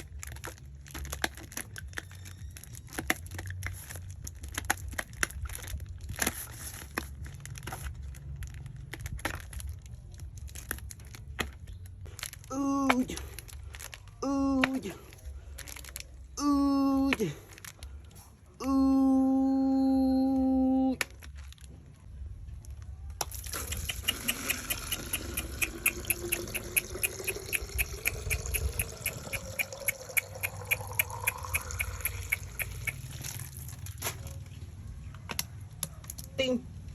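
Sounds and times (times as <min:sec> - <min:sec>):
liquid pouring into container: 0:23.3 - 0:34.0
rapid even clicking: 0:23.4 - 0:33.4.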